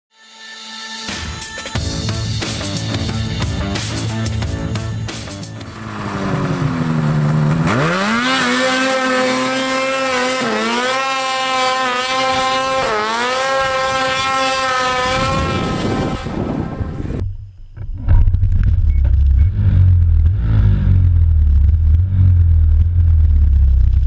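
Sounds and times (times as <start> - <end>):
snowmobile engine revving: 5.6 - 17.2.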